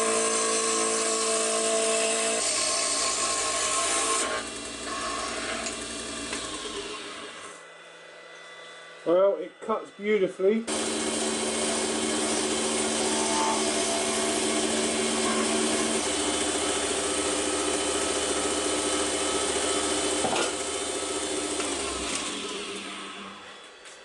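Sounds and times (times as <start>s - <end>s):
turning tool cutting wood hiss: 0.0s - 7.6s, 10.7s - 23.8s
wood lathe motor hum: 0.0s - 7.7s, 10.7s - 24.0s.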